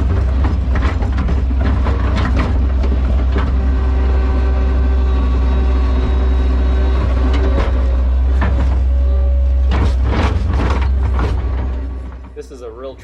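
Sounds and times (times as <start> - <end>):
machine knocks and clunks: 0.0 - 4.0, 6.0 - 12.4
diesel engine droning under load: 0.0 - 13.0.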